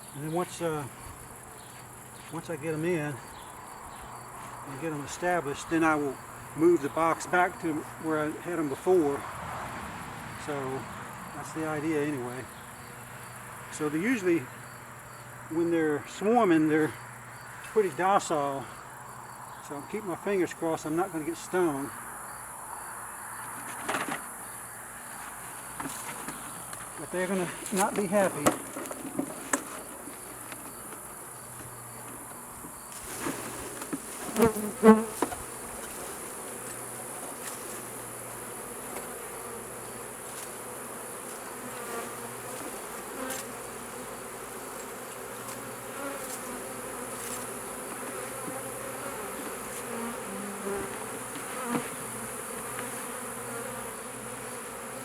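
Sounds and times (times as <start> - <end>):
bees buzzing: 10.4 - 55.0
knocks and rustles: 23.6 - 24.3, 27.6 - 37.8.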